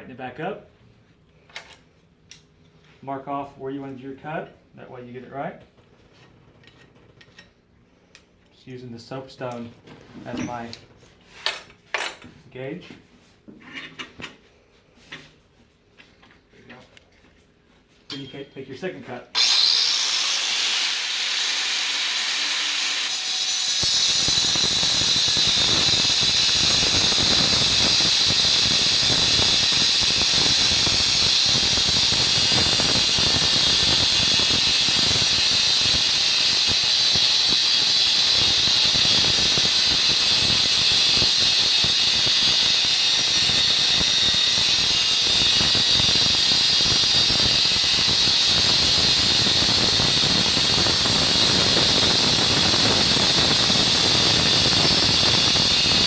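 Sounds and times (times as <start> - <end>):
angle grinder cutting steel pipe: 19.4 - 56.0.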